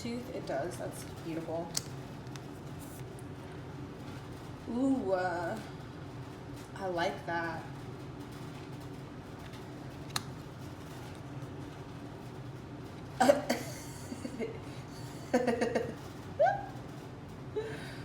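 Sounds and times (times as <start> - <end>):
low background hum: 0.0 - 18.0
woman chuckling: 13.2 - 16.8.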